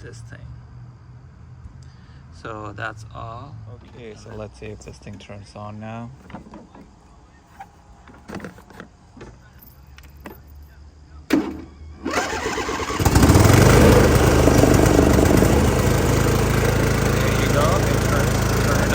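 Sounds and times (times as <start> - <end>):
light clicks and knocks: 6.2 - 7.0
riding mower engine cranking: 6.2 - 9.0, 11.3 - 18.9
riding mower engine running: 11.3 - 18.9.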